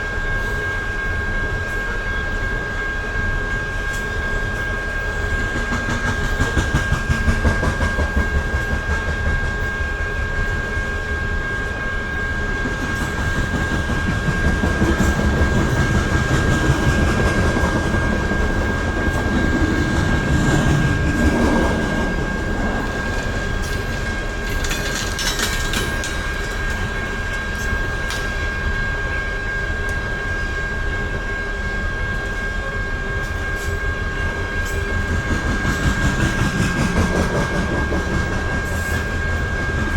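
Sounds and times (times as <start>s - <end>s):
high ringing tone: 0.0s - 6.2s, 8.8s - 36.6s
train wheels clattering over rail joints: 5.2s - 9.7s, 12.6s - 28.4s, 34.7s - 39.9s.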